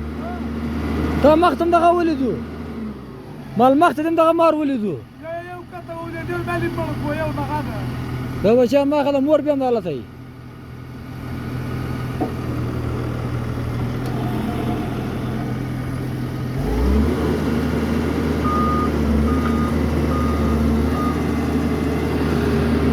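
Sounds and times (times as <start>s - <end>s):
excavator diesel engine running: 0.0s - 22.9s
short alarm beeps: 18.5s - 21.2s.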